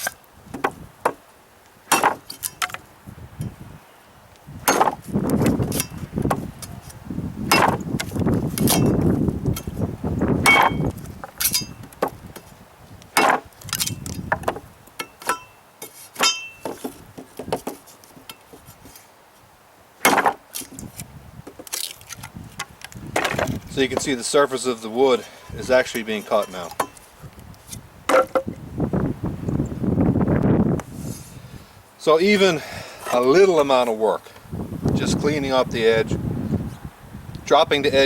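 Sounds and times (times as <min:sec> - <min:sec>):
machete chopping into wood: 0:01.9 - 0:02.8, 0:04.6 - 0:06.4, 0:07.5 - 0:09.7, 0:10.4 - 0:12.2, 0:13.2 - 0:15.5, 0:16.2 - 0:17.8, 0:20.0 - 0:20.8
wind buffeting microphone: 0:03.0 - 0:14.8, 0:20.8 - 0:24.3, 0:25.4 - 0:26.2, 0:27.2 - 0:31.8, 0:34.4 - 0:38.0.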